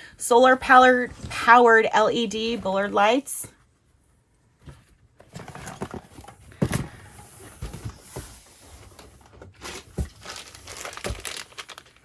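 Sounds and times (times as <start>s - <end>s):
packaging rustling: 9.6s - 12.0s.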